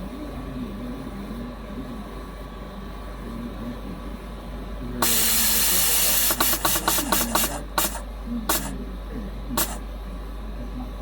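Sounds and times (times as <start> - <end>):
valve hissing air puffs: 5.0 - 8.7, 9.6 - 9.8.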